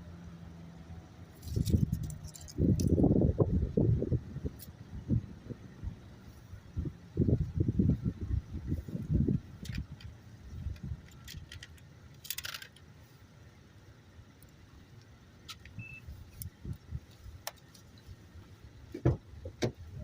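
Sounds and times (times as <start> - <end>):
low rumble: 1.2 - 12.2
handling clicks and rattles: 1.4 - 3.0, 9.3 - 12.9, 14.4 - 18.2.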